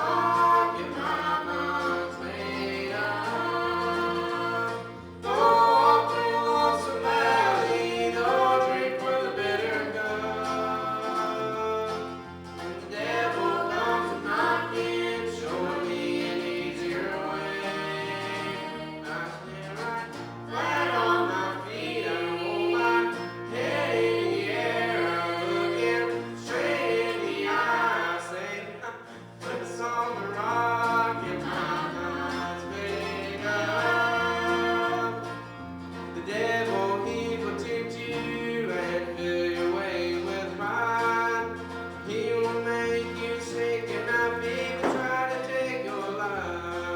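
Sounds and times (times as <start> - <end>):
instrumental backing with bass line: 0.0 - 27.8
choir singing: 0.0 - 46.9.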